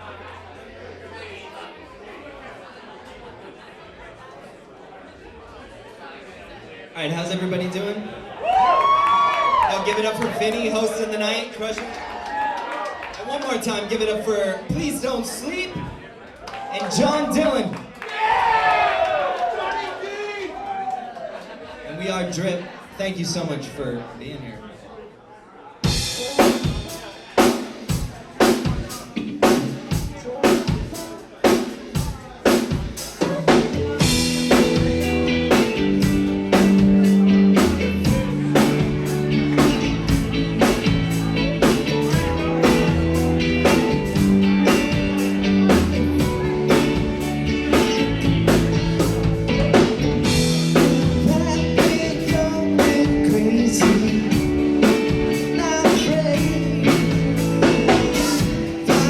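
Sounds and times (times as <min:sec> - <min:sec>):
drum kit beat: 0:25.8 - 0:59.0
live rock band playing: 0:25.8 - 0:59.0.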